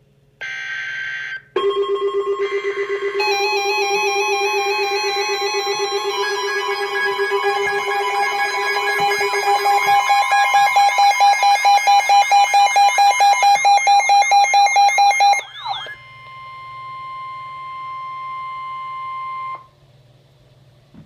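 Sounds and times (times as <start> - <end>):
pulsing warbling alarm tone: 1.6 - 19.7
steady alert tone: 2.5 - 16.2.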